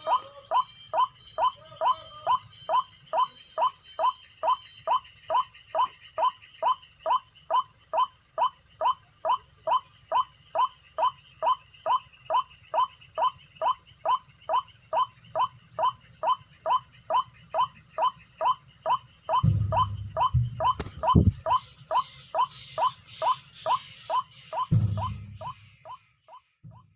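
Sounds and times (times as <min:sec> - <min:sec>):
repeated falling bird call: 0:00.0 - 0:26.9
sharp knock: 0:19.3 - 0:21.6, 0:24.6 - 0:25.7
low rumbling thumps: 0:19.4 - 0:21.6, 0:24.7 - 0:25.8
steady high buzz: 0:19.4 - 0:21.8.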